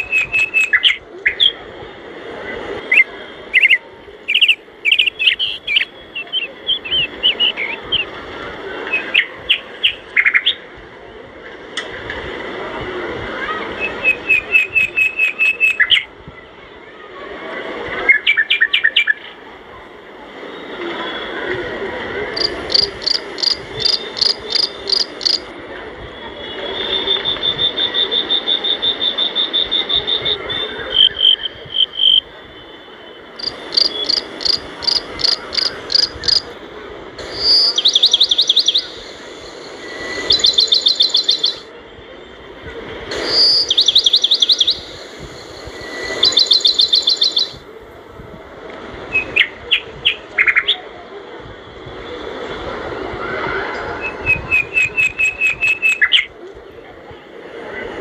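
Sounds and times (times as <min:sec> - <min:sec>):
steady background noise: 0:00.0 - 0:58.0
birds singing trills: 0:02.9 - 0:08.1, 0:22.4 - 0:25.5, 0:33.4 - 0:36.5, 0:37.3 - 0:41.7, 0:43.1 - 0:47.6.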